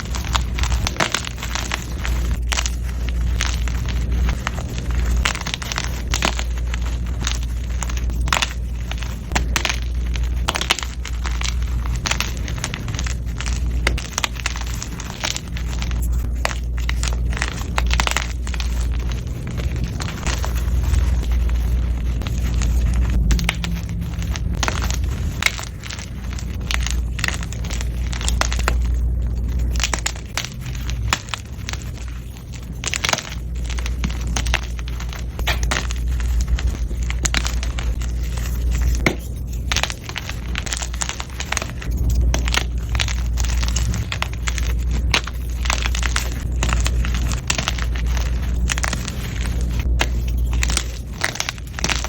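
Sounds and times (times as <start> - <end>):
chalk crunching by hand: 0.0 - 52.0
low rumble: 0.0 - 52.0.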